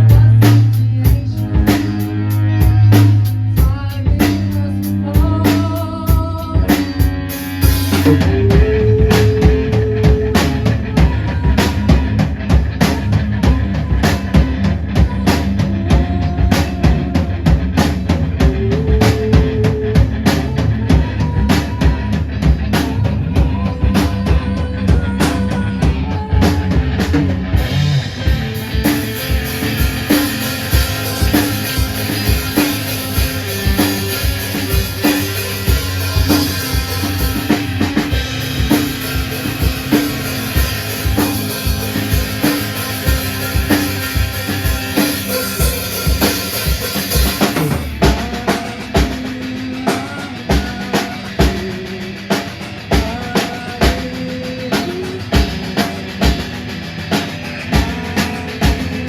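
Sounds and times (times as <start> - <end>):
drum kit beat: 0.0 - 59.0
rock band playing: 0.0 - 59.0
cymbals crashing: 27.8 - 47.9.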